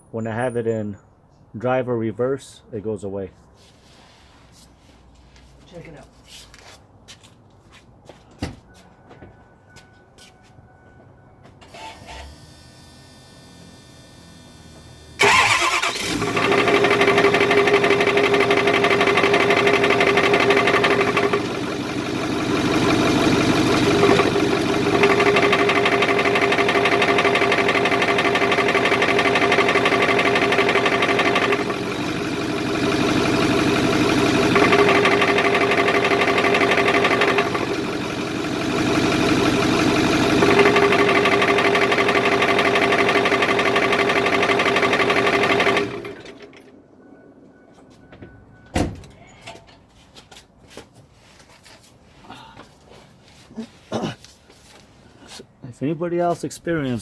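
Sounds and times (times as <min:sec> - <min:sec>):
diesel engine starting and idling: 0:11.6 - 0:49.4
ticking knock in engine idle: 0:14.8 - 0:46.8.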